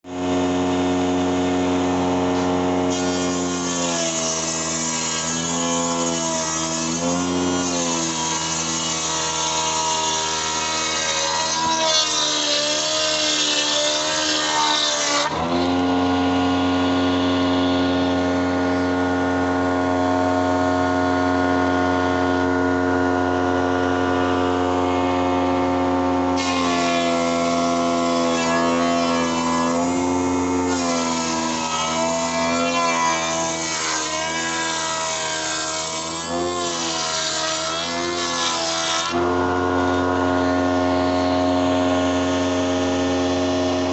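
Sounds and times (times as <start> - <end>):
milling machine motor hum: 0.1 - 10.8, 15.0 - 32.4, 39.0 - 43.9
cutter hissing through wood: 0.1 - 43.9.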